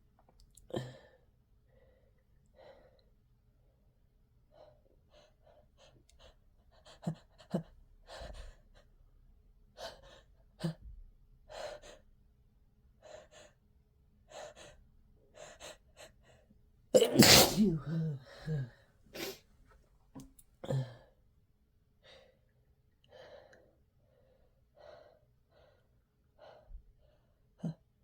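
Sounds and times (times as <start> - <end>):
person sniffing and gasping: 17.0 - 19.4.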